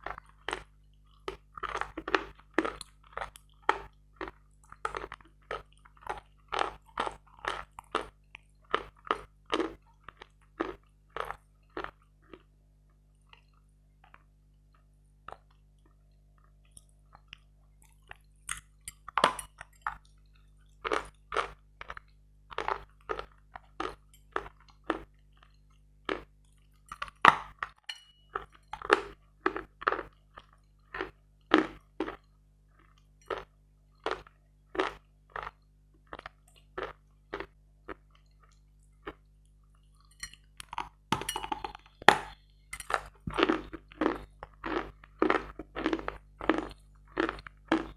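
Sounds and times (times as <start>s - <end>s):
crisp crunching of chalk chewing: 41.5s - 47.9s.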